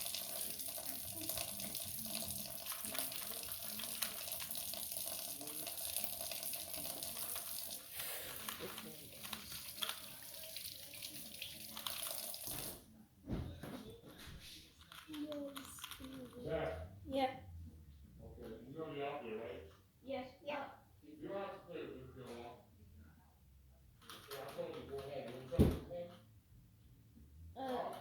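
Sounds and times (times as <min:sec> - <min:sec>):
faint voices: 0:00.0 - 0:19.6.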